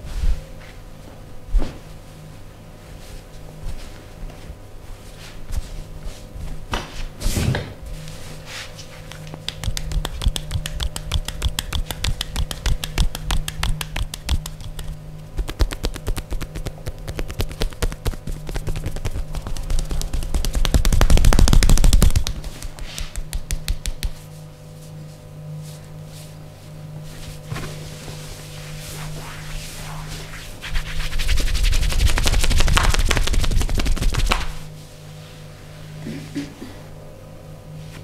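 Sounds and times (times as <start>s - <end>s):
hands tapping and slapping on body: 9.0s - 24.2s, 32.1s - 34.6s.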